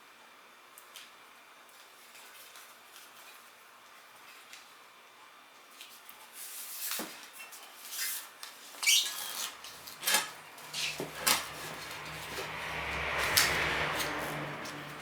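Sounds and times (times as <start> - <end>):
hand tools clicking and scraping: 8.8 - 15.0
low steady hum: 9.6 - 15.0.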